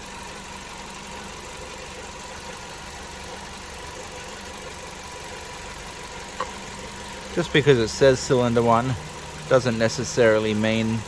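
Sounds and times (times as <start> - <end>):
car engine idling: 0.0 - 11.0.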